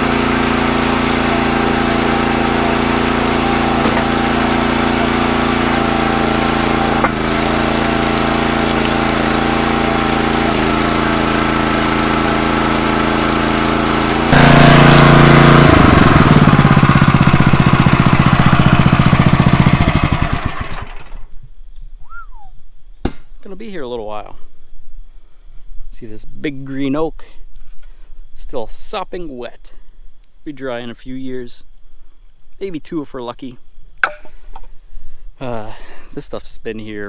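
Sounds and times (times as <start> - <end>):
engine running and winding down: 0.0 - 21.2.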